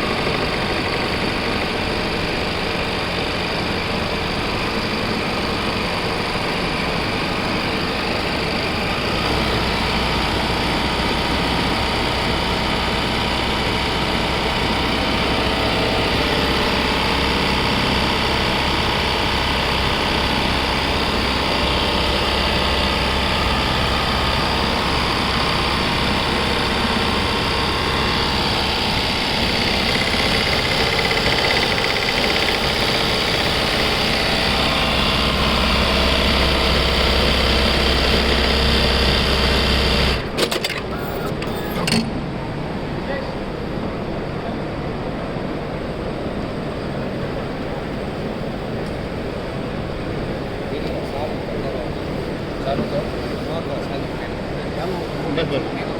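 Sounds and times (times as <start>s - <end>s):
sewing machine whirring: 0.0s - 42.3s.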